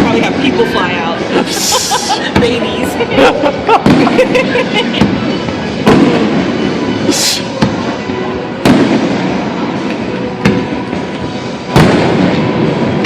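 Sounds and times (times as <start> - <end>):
rumble of distant fireworks: 0.0 - 13.0
firework crackling hiss: 1.4 - 2.2, 6.0 - 7.6
sharp firework bangs: 5.0 - 6.7, 8.6 - 9.6, 11.7 - 13.0.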